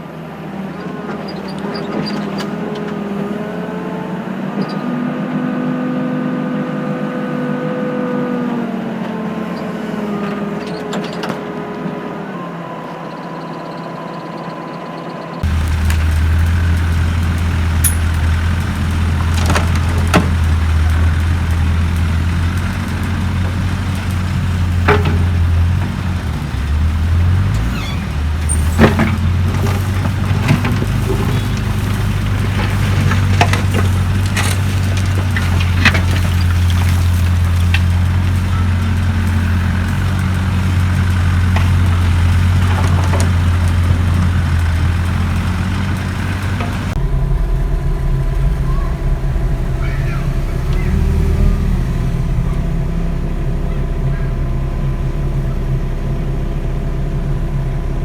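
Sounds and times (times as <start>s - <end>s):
excavator diesel engine running: 15.4s - 58.0s.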